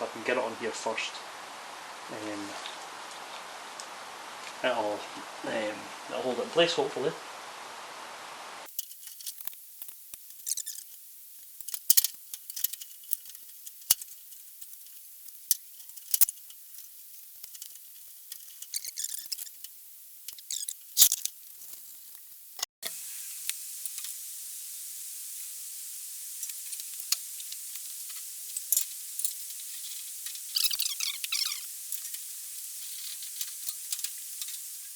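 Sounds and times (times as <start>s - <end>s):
steady faint hiss: 0.0s - 34.9s.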